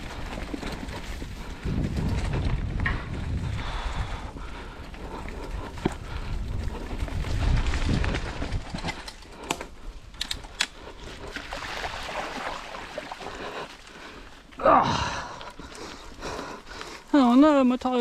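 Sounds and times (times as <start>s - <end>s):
bike clicks and rattles: 0.0s - 11.4s
bike tyre noise: 0.0s - 11.4s
wind rushing over microphone: 1.0s - 9.0s.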